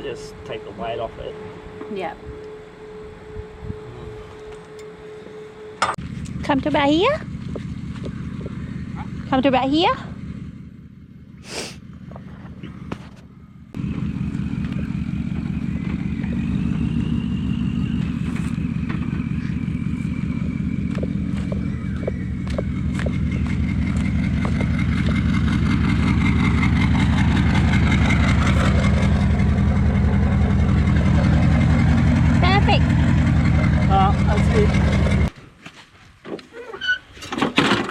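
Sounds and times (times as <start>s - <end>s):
faint high whine: 0.0s - 6.0s
vehicle engine running: 0.0s - 35.4s.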